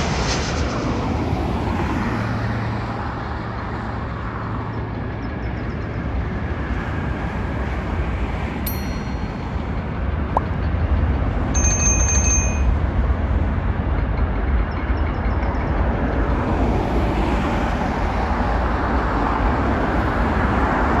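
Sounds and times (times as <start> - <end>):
high jet whine: 0.0 - 6.5, 8.6 - 15.3
jet engine rumble: 0.0 - 8.6.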